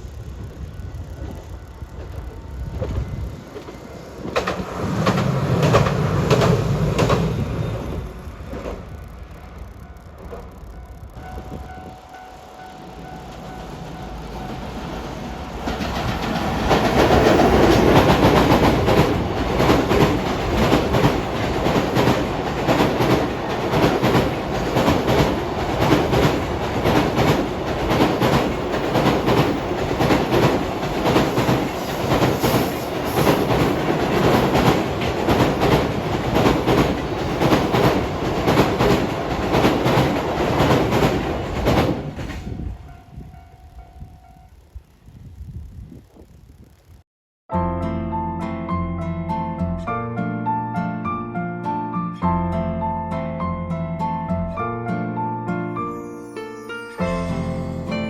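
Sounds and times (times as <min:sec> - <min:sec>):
train wheels clattering over rail joints: 0:02.0 - 0:09.0, 0:15.5 - 0:42.6.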